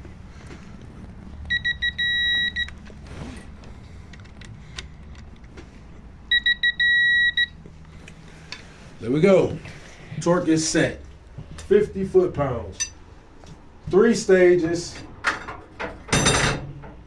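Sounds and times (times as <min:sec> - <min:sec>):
torque wrench long beep: 0:01.5 - 0:02.7, 0:06.3 - 0:07.5.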